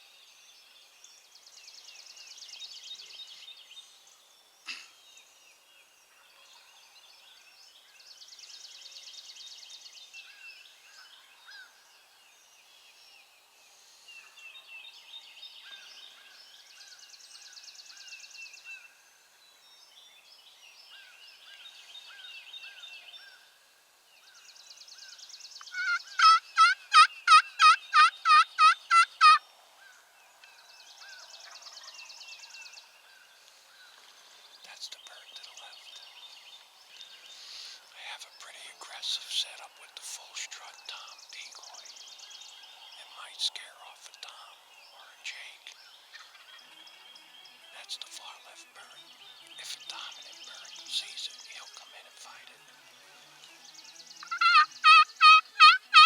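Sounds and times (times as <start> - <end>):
songbird calls and trills: 0.0 - 56.0
distant turkeys gobbling: 25.7 - 29.4, 54.2 - 56.0.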